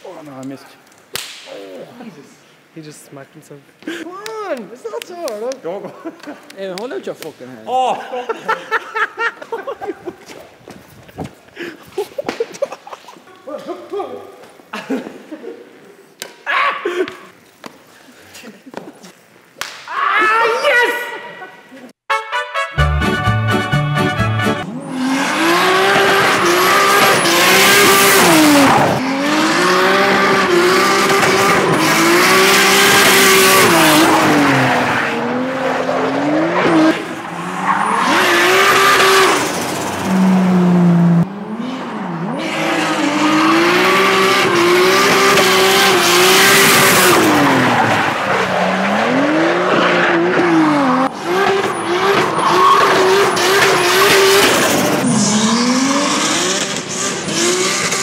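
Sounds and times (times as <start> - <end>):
car engine revving: 24.6 - 58.0
tyre squeal: 51.6 - 53.9.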